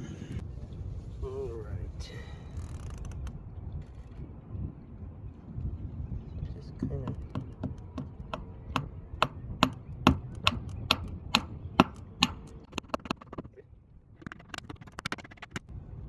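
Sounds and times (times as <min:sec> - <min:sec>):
wooden bungs tapped into wood: 0:06.8 - 0:13.5.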